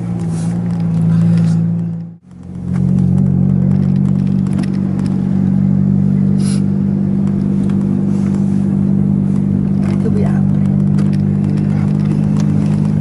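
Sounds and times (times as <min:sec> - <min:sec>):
vehicle engine hum: 0:00.0 - 0:13.0
short hiss: 0:06.4 - 0:06.7.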